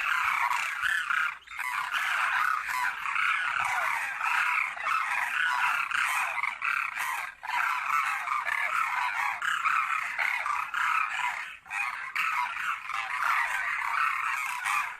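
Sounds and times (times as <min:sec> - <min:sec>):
flock of cranes calling: 0:00.0 - 0:14.9.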